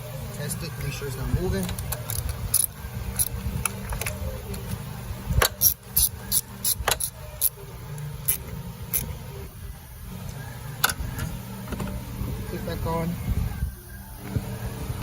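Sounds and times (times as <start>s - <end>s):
steady low rumble: 0.0s - 15.0s
socket wrench clicks and clinks: 1.6s - 4.7s, 5.4s - 7.6s.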